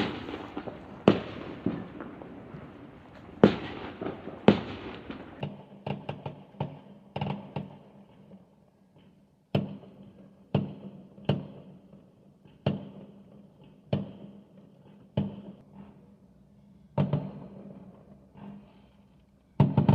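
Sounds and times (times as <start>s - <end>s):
fireworks bangs: 0.0s - 8.4s, 17.0s - 18.8s, 19.6s - 19.9s.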